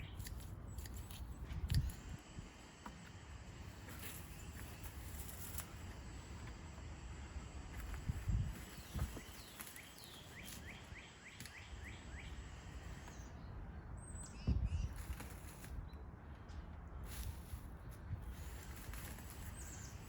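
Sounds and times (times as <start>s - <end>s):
songbird chirping: 0.0s - 2.1s, 2.7s - 20.0s
outdoor background noise: 0.0s - 20.0s
dull low thumps: 14.4s - 15.1s.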